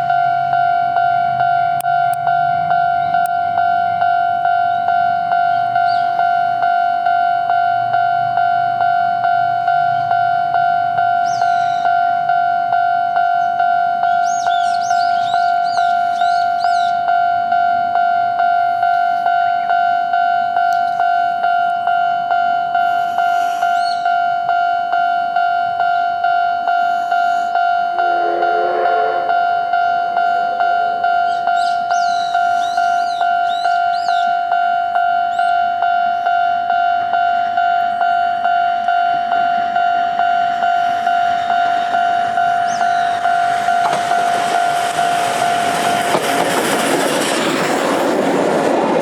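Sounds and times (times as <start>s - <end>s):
crossing warning bell tone: 0.0s - 49.0s
low-pitched sound: 27.9s - 30.2s.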